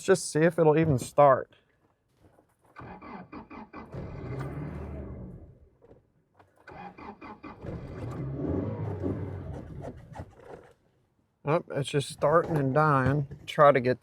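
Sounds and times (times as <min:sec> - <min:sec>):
engine cranking and stalling: 0:02.6 - 0:10.8.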